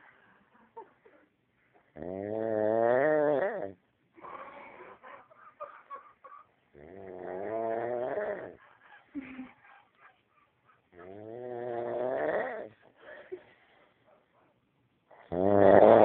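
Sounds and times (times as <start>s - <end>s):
man snoring: 2.0s - 3.7s, 6.8s - 8.6s, 11.0s - 12.7s, 15.2s - 16.0s.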